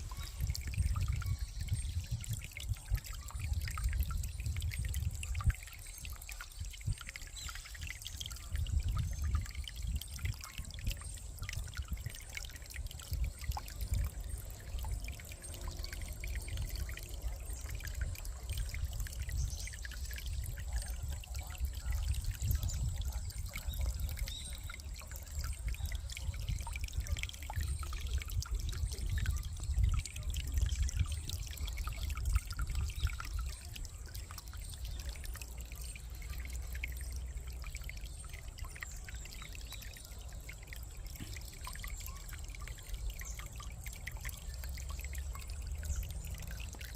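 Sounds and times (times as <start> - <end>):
brook trickling and splashing: 0.0 - 46.9.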